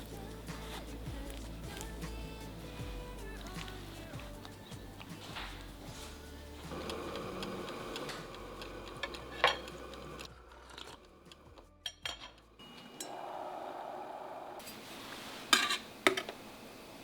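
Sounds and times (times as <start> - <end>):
cookware knocked and set down: 9.1 - 9.8, 11.8 - 12.4, 15.5 - 16.4.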